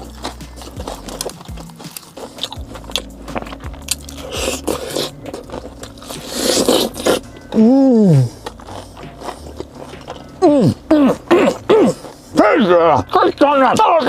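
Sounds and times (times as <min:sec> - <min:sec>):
chewing and biting food: 0:00.0 - 0:14.0
voiced mmm of enjoyment: 0:06.2 - 0:09.6, 0:10.3 - 0:12.5.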